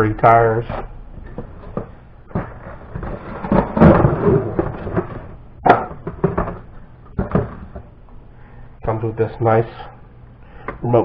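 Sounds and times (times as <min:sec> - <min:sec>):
knocks on box: 0:05.6 - 0:06.6.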